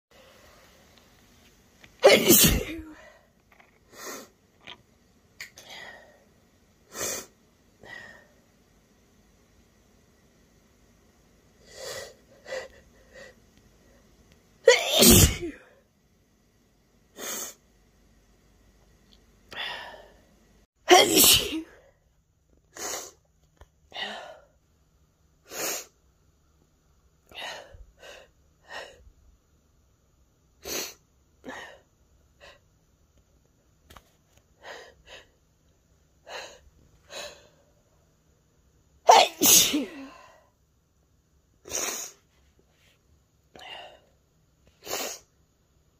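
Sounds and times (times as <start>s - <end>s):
person sneezing: 2.0s - 3.2s, 14.7s - 15.7s, 20.9s - 21.8s, 39.1s - 40.4s.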